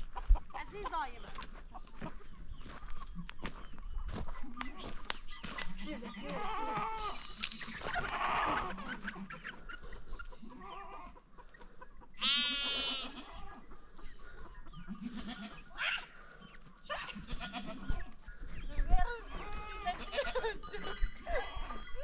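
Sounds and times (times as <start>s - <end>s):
goats bleating: 5.9s - 9.6s, 10.4s - 11.2s, 12.2s - 13.6s, 14.8s - 16.2s, 16.9s - 18.1s, 19.2s - 21.8s.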